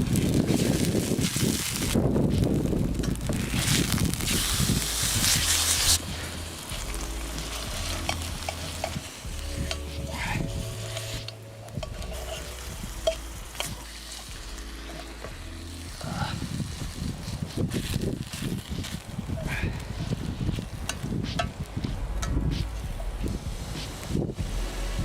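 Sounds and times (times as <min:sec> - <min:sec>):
food sizzling in a pan: 0:00.0 - 0:25.0
stirring clicks and scrapes: 0:06.8 - 0:15.4, 0:16.4 - 0:23.1.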